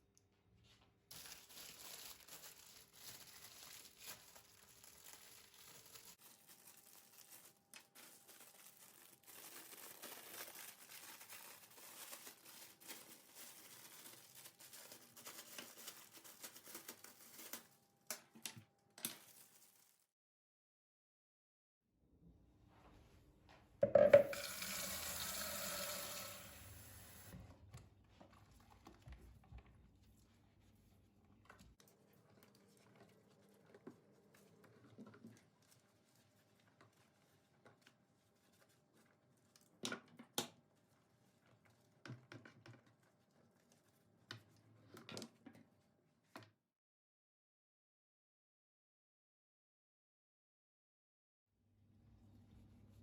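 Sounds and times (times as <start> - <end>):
things being handled: 1.1 - 20.0, 23.8 - 24.8
knock: 23.8 - 24.3
tap water running: 23.8 - 27.4.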